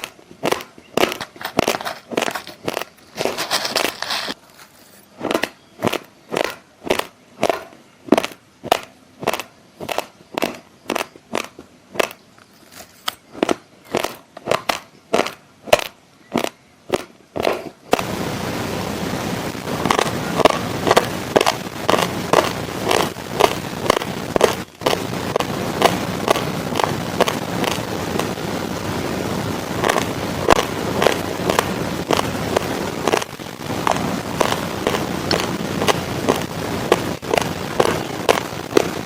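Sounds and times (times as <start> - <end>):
chewing crunchy rice: 0.0 - 8.4, 9.2 - 17.7, 19.9 - 25.0
rustling: 0.0 - 39.0
steady hiss: 0.0 - 39.0.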